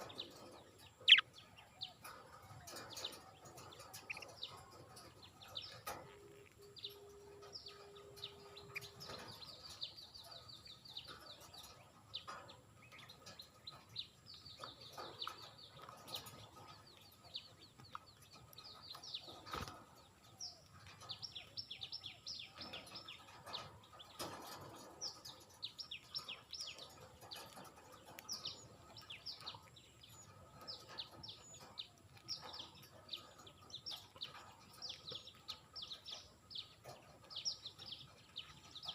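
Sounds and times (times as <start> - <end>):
budgerigars chirping: 0.0 - 2.1, 3.8 - 6.0.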